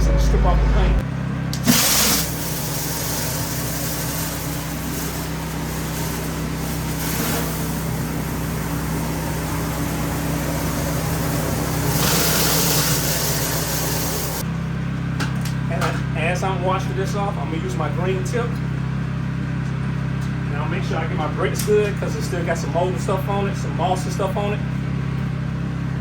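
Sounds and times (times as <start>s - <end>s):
pressure washer engine running: 0.0s - 14.5s
spray hissing on floor: 1.6s - 14.4s.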